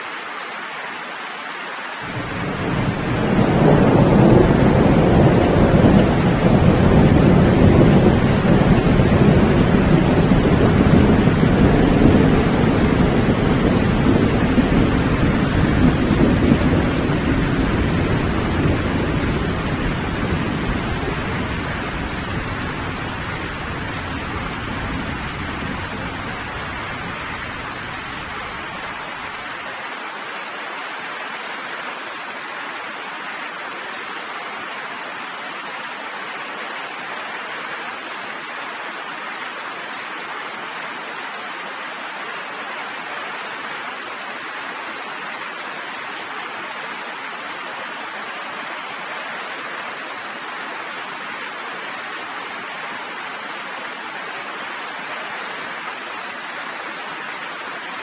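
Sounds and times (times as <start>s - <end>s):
steady rain falling: 0.0s - 58.0s
low thunder rumble: 2.1s - 28.0s.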